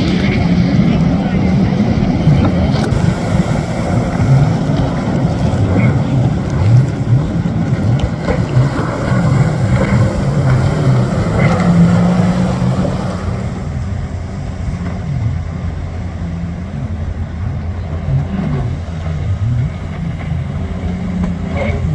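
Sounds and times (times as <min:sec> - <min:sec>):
jet ski engine racing: 0:00.0 - 0:21.9
wind noise: 0:00.0 - 0:21.9
water spray: 0:02.4 - 0:13.8.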